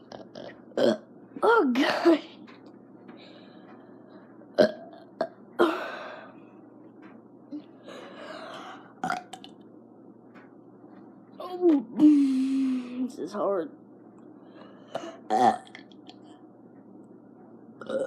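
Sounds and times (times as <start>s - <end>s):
person stifling burps: 0.0s - 1.1s, 4.6s - 6.0s, 9.0s - 9.5s, 15.0s - 15.9s, 17.8s - 18.0s.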